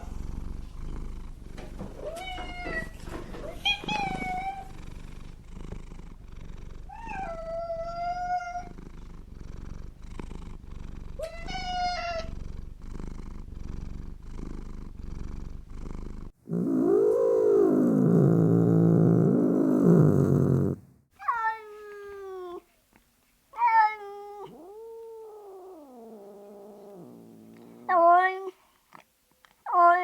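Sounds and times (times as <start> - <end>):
cat purring: 0.0 - 21.0, 24.2 - 29.1
cat meowing: 2.0 - 4.7, 6.9 - 8.7, 11.2 - 12.3, 21.2 - 22.6, 23.6 - 27.0, 27.9 - 28.6, 29.7 - 30.0.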